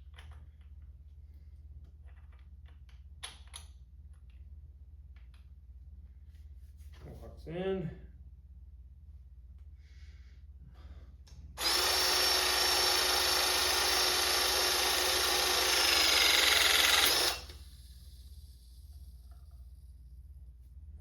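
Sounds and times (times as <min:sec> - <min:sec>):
electric pump motor whine: 0:11.6 - 0:17.8.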